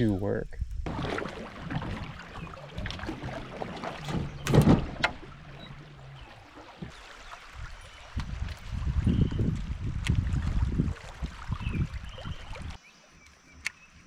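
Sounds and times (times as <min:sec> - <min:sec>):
water lapping around hull: 0:00.0 - 0:13.6
low hum: 0:00.4 - 0:10.6.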